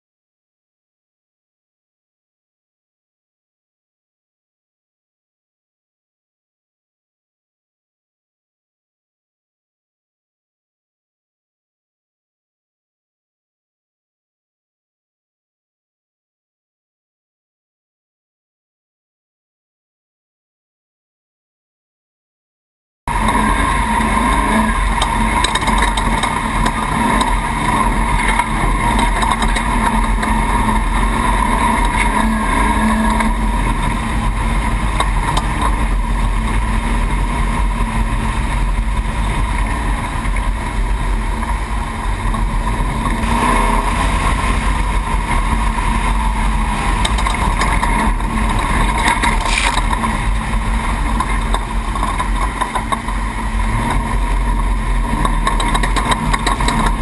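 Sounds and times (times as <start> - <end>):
chassis rattle: 23.1 - 57.0
truck engine running at speed: 23.1 - 57.0
wind noise: 23.1 - 57.0.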